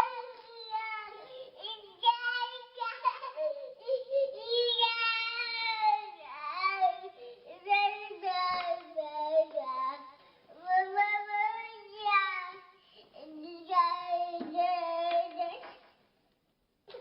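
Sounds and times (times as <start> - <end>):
little boy crying: 0.0 - 8.6.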